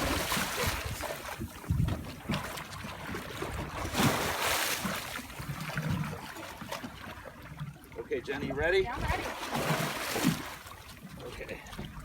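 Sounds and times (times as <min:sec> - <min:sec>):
wind buffeting microphone: 0:00.0 - 0:02.4
water sloshing against boat hull: 0:00.0 - 0:12.0.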